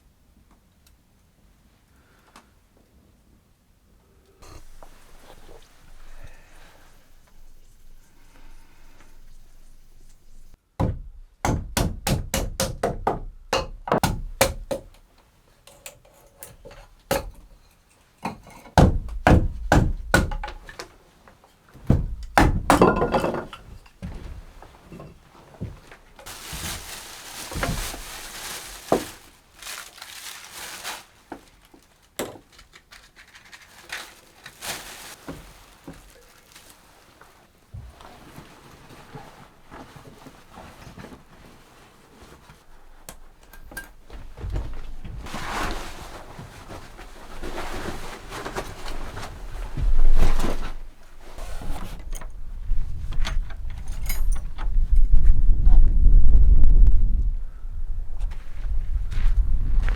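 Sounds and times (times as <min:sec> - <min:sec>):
sharp knocks and thuds: 0:10.8 - 0:14.9, 0:18.8 - 0:20.7, 0:21.8 - 0:24.6.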